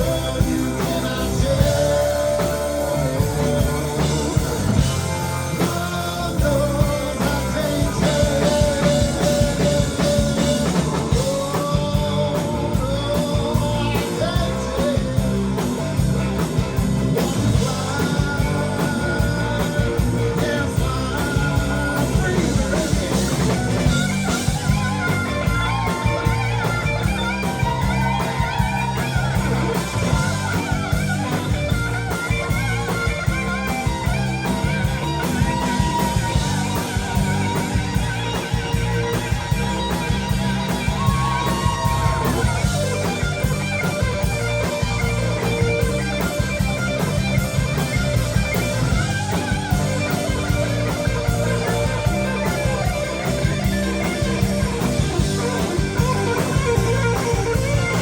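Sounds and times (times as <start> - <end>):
rock band playing: 0.0 - 58.0
electric guitar solo: 22.8 - 58.0.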